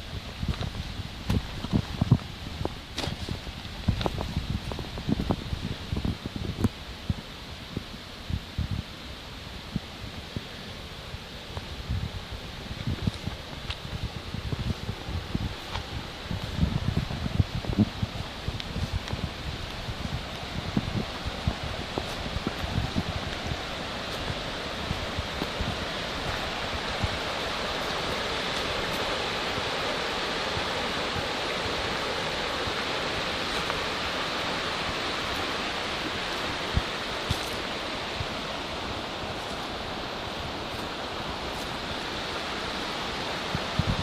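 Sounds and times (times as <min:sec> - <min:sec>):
waterfall rushing: 0:00.0 - 0:44.0.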